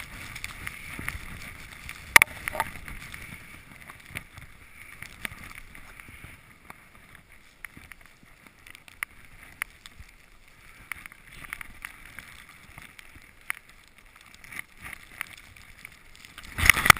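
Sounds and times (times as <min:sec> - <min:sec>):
skis sliding through snow: 0:00.0 - 0:16.9
sharp clicks and knocks: 0:02.1 - 0:02.8.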